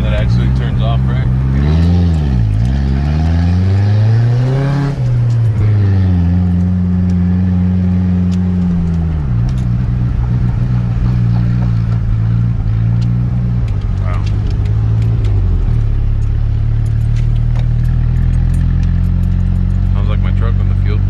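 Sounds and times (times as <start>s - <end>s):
car engine running: 0.0s - 21.0s.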